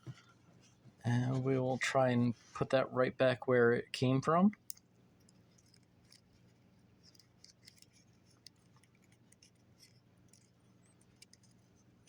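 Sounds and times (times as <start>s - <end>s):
small clicks and scratches: 4.6s - 12.0s.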